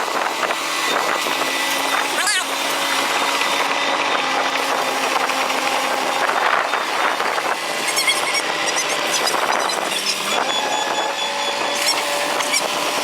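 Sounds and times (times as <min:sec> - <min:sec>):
heavy machinery engine running: 0:00.0 - 0:13.0
high squeaks: 0:07.7 - 0:12.9.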